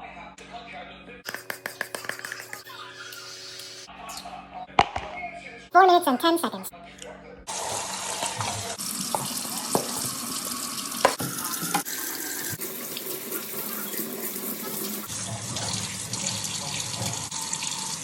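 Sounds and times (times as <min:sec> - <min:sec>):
tap water running into sink: 0:07.5 - 0:18.0.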